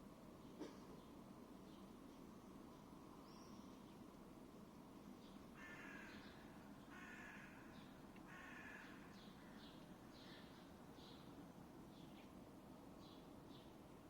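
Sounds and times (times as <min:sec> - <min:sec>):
crow cawing: 0:05.6 - 0:06.1, 0:06.9 - 0:07.6, 0:08.3 - 0:09.0.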